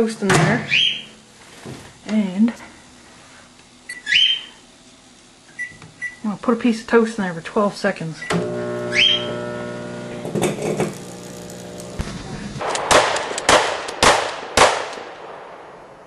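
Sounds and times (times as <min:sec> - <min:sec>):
microwave oven humming: 0:00.0 - 0:12.6
loud sharp bangs: 0:12.0 - 0:16.0.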